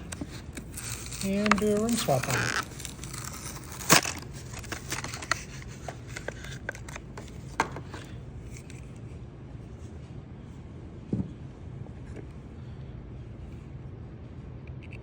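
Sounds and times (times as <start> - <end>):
plastic package clicking and crackling: 0.0 - 8.1.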